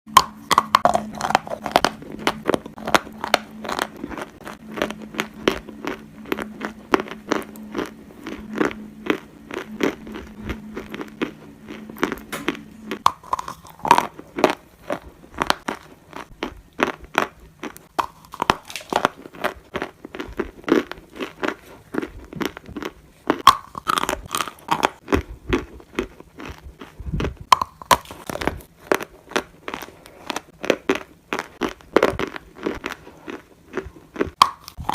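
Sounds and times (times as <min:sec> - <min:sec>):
chewing brittle clay crunches: 0:00.1 - 0:34.9.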